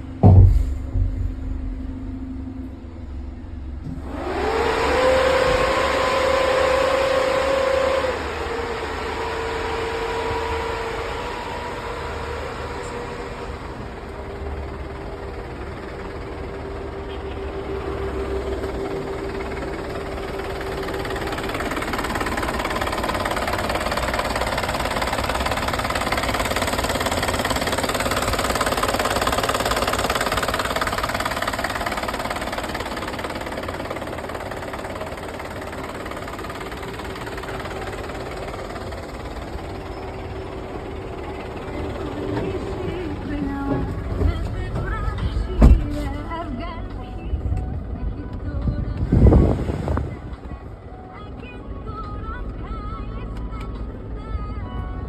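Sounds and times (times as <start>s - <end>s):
air conditioning whine: 0.0s - 55.0s
car engine running: 0.0s - 55.0s
rush of air from blower: 3.9s - 14.3s, 49.0s - 50.3s.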